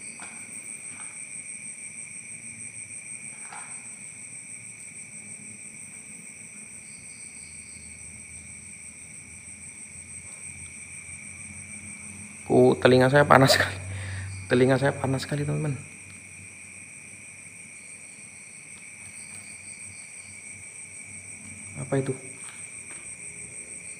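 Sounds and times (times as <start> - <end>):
crickets trilling: 0.0 - 23.9
faint pulsing chirp: 12.5 - 15.8.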